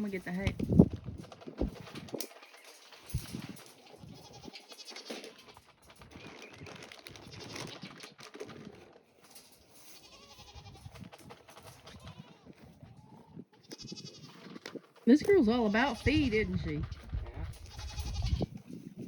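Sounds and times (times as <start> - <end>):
small clicks and rustling: 0.1 - 15.3
goats bleating: 3.7 - 5.6, 9.9 - 10.9, 17.6 - 18.5.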